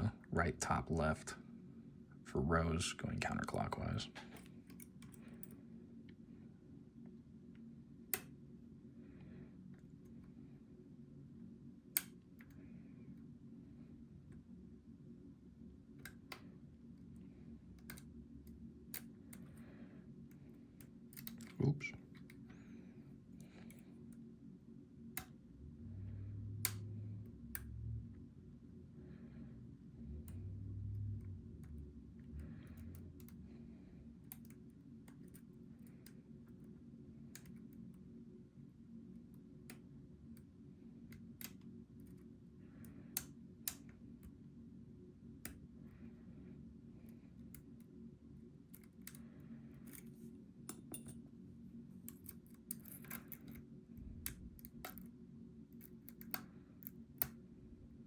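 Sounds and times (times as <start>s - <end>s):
lock picks clicking and scraping: 21.1s - 21.6s, 48.7s - 51.2s, 52.0s - 55.1s, 55.7s - 57.3s.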